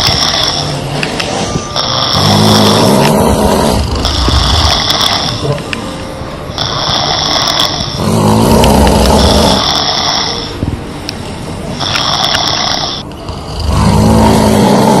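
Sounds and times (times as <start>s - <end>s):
woman snoring: 1.8s - 5.5s, 6.6s - 10.5s, 11.8s - 15.0s
high hiss of breath: 9.1s - 10.6s.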